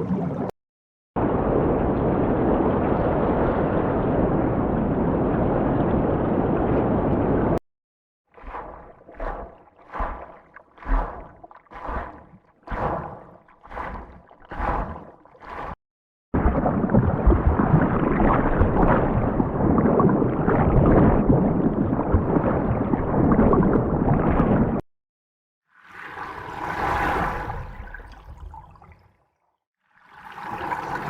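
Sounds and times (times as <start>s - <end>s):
water rushing and gurgling: 8.3s - 15.8s, 16.4s - 24.8s
water sloshing: 8.3s - 15.8s.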